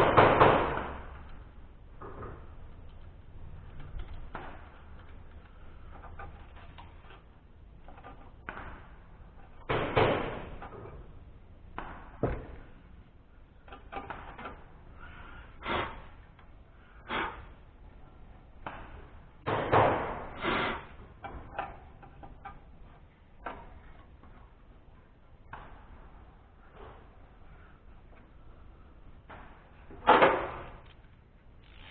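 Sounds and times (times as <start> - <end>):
tools and metal parts clunking: 3.8 - 11.2, 13.6 - 14.9, 21.1 - 24.8.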